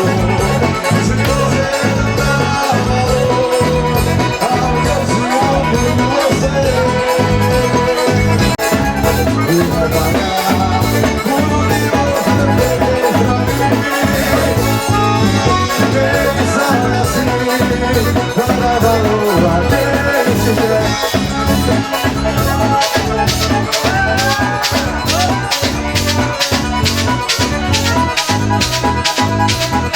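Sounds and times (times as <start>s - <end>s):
accordion melody: 0.0s - 29.9s
steady bass beat: 0.0s - 29.9s
shaker keeping time: 22.4s - 29.9s.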